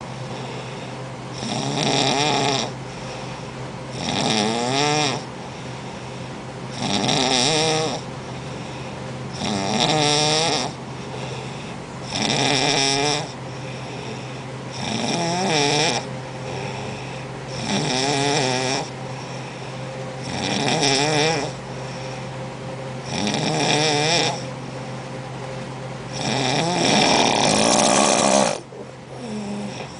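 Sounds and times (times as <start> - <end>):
woman snoring: 1.4 - 2.8, 4.0 - 5.3, 6.8 - 8.1, 9.4 - 10.8, 12.1 - 13.4, 14.8 - 18.9, 20.2 - 21.6, 23.1 - 24.5, 26.1 - 29.9.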